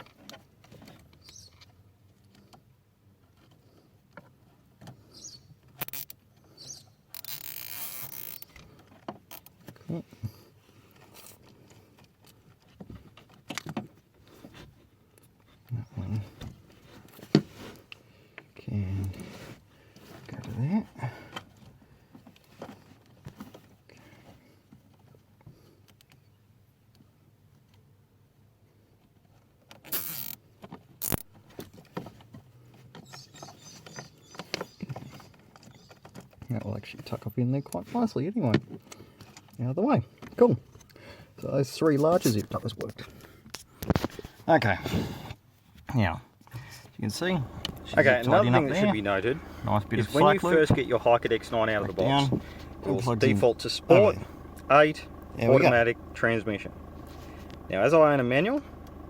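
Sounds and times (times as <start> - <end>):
zip tie ratchet rasping: 5.8 - 6.2, 7.1 - 8.6, 29.9 - 30.4.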